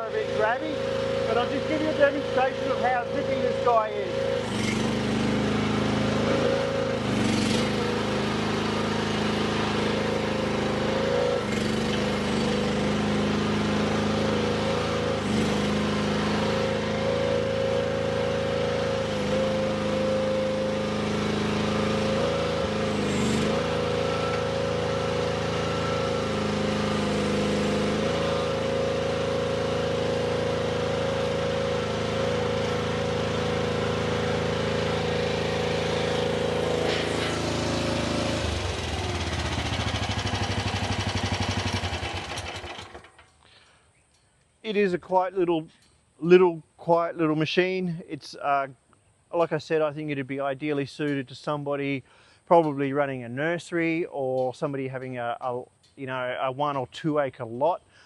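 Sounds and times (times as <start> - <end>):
petrol engine running: 0.0 - 43.4.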